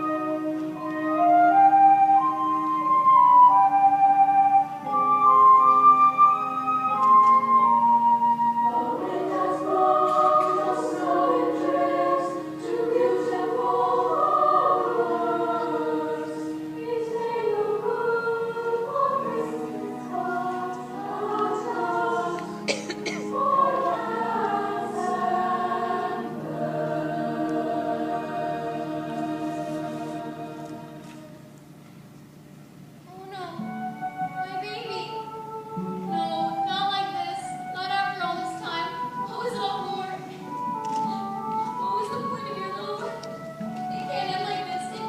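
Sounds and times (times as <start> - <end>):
chorus of young voices singing: 8.2 - 31.5.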